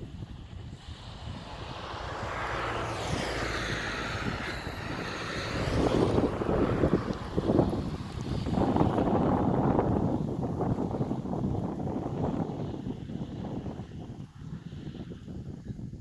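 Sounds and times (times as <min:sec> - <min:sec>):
whooshing rush: 0:00.0 - 0:10.2
wind buffeting microphone: 0:00.0 - 0:16.0.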